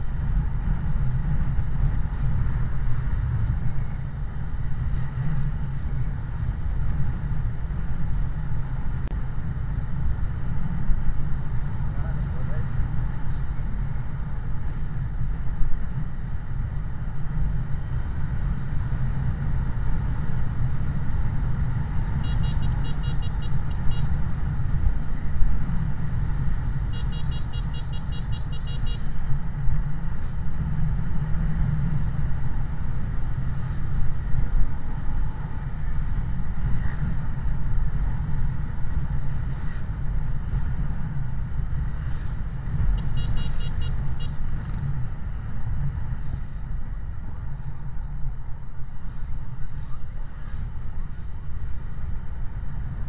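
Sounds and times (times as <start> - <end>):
vehicle engine and road noise: 0.0 - 53.0
rapid pulsing horn beeps: 22.2 - 24.1, 26.8 - 29.1, 42.9 - 44.4.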